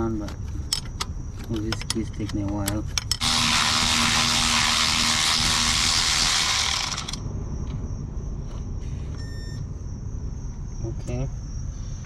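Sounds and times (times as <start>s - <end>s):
power tool spinning out bolt: 3.2s - 7.2s.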